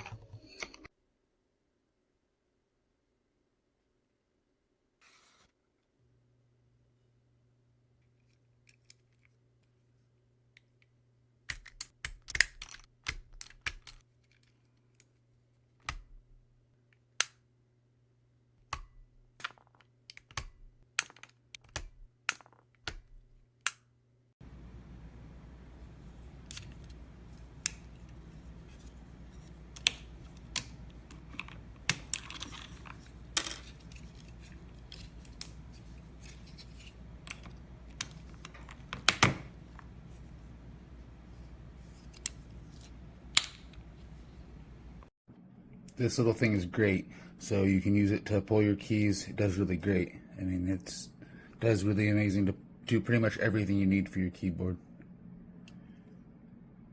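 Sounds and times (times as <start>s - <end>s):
keyboard keycaps clicking: 11.5s - 14.0s
steady low hum: 24.4s - 56.9s.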